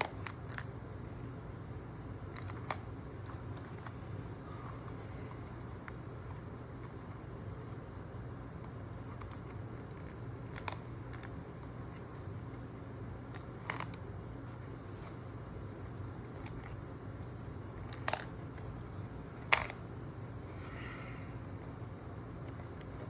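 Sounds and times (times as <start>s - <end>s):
steady low hum: 0.0s - 23.0s
puzzle box pieces clicking: 9.0s - 11.4s, 17.8s - 18.8s.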